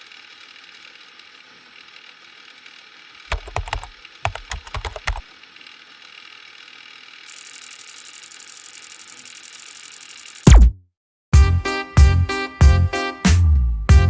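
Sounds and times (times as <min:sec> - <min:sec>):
sharp clicks and knocks: 0:03.3 - 0:05.2.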